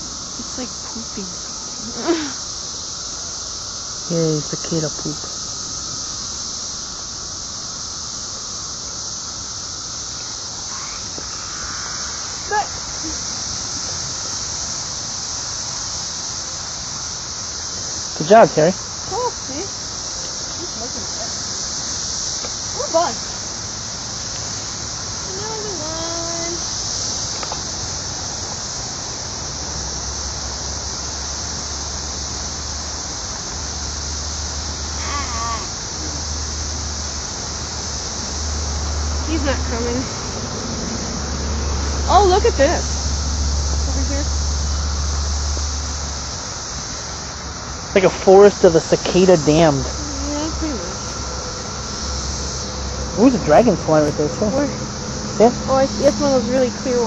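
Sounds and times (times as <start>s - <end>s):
cicadas droning: 0.0s - 57.0s
low hum: 33.8s - 57.0s.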